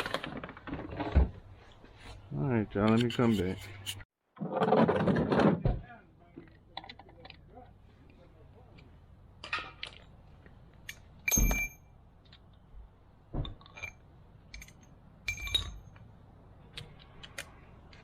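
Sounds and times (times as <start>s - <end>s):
metal objects clinking: 13.6s - 16.0s.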